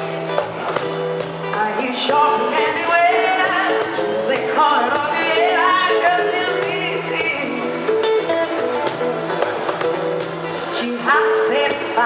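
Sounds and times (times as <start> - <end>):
live pop music accompaniment: 0.0 - 12.0.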